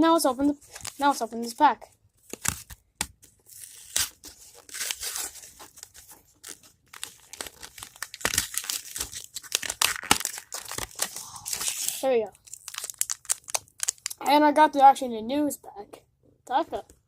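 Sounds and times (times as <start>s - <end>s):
foil wrapper tearing and crinkling: 0.6s - 1.0s, 2.2s - 14.2s.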